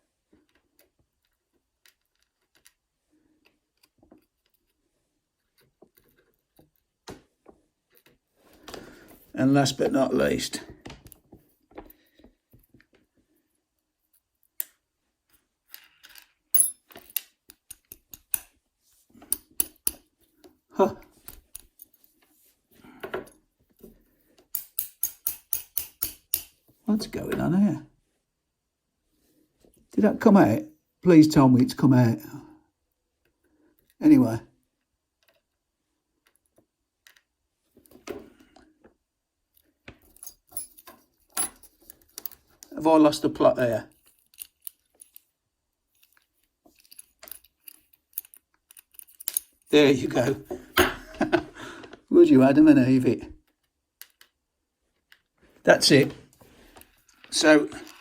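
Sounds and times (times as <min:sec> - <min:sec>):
lock parts clicking and rattling: 0:14.1 - 0:18.6, 0:19.2 - 0:20.1, 0:21.0 - 0:22.1, 0:23.0 - 0:26.6, 0:39.5 - 0:42.7, 0:43.9 - 0:51.0
small metal clicks and taps: 0:16.1 - 0:18.6, 0:19.3 - 0:20.1, 0:24.4 - 0:26.6, 0:46.0 - 0:49.6.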